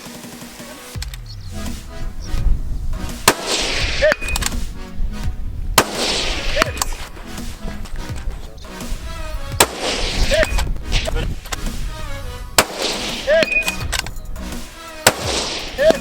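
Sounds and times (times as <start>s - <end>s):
background music: 0.0s - 16.0s
rifle shots echoing: 3.0s - 11.9s, 12.5s - 16.0s.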